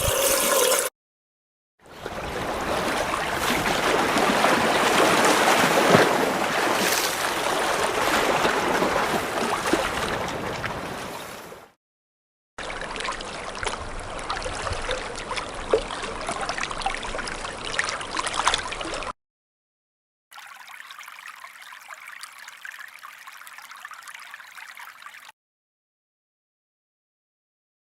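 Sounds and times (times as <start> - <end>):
running water: 0.0 - 0.9, 2.1 - 11.6, 20.3 - 25.3
trickling and gurgling water: 0.0 - 0.9, 12.6 - 19.2, 20.3 - 25.4.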